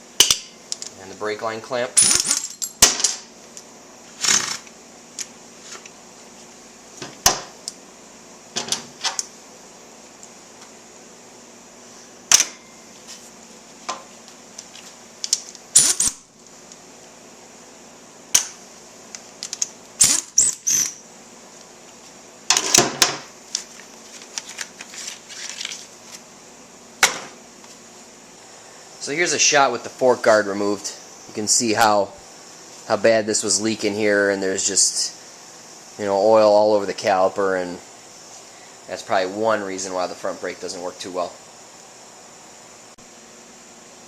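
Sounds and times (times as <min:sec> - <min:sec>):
metal tools and bolts clinking: 0:02.0 - 0:03.2.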